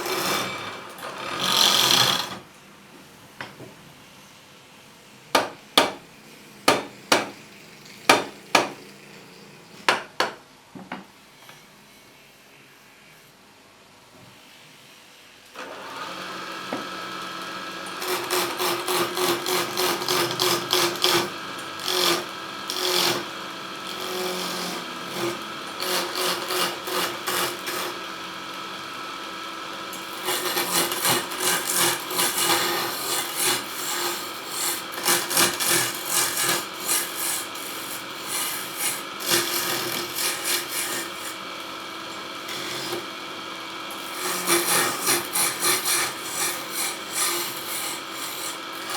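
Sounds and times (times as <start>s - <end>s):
chisel scraping spinning wood: 0.0s - 2.4s, 16.6s - 48.9s
wood lathe motor humming: 0.0s - 2.4s, 15.6s - 48.9s.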